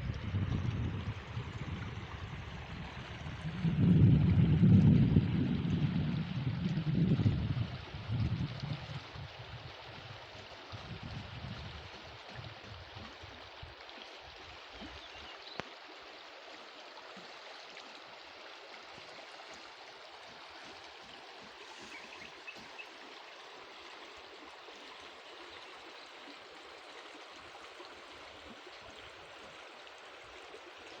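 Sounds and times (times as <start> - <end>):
wind rumble on microphone: 0.0 - 13.8.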